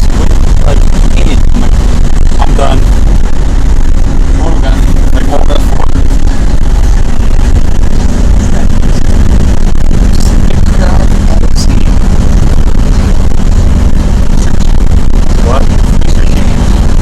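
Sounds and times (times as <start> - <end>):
bus engine and road rumble: 0.0 - 17.0
faint voices: 9.8 - 16.8.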